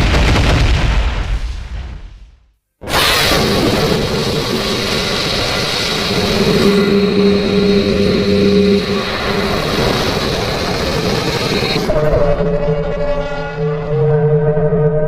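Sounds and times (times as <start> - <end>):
mechanical roar: 2.8 - 15.0
steady droning hum: 3.6 - 15.0.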